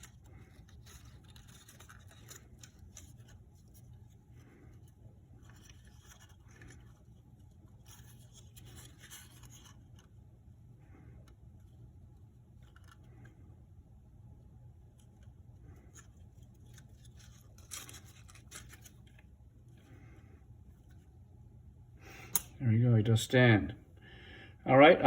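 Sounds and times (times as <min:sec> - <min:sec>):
cardboard rustling and scraping: 0:00.0 - 0:10.2, 0:15.0 - 0:19.8.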